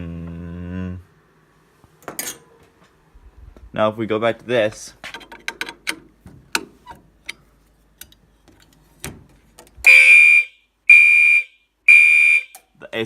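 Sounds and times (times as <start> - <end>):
fire alarm horn blasts: 9.9 - 12.6.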